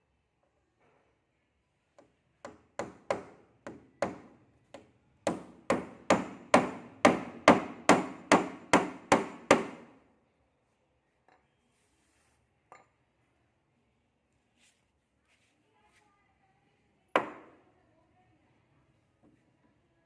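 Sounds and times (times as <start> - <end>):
hammer striking wood: 2.0 - 9.9, 17.2 - 17.5.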